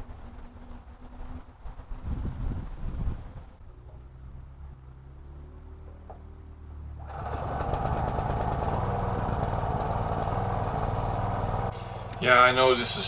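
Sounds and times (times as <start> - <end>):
small gasoline engine running: 7.0 - 13.0.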